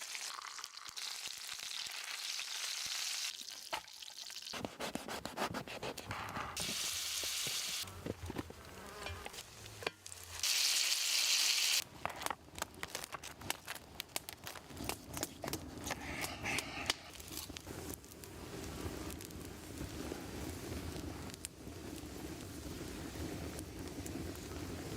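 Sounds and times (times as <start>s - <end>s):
food sizzling on a hot pan: 0.0s - 4.5s, 6.6s - 7.9s, 9.4s - 11.8s
small clicks and crackles: 11.8s - 24.9s.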